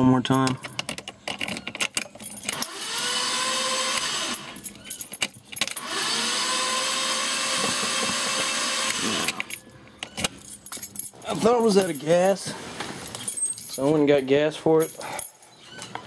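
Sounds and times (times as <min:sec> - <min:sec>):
keys jingling: 0:00.3 - 0:03.0, 0:04.3 - 0:05.9, 0:09.2 - 0:16.0.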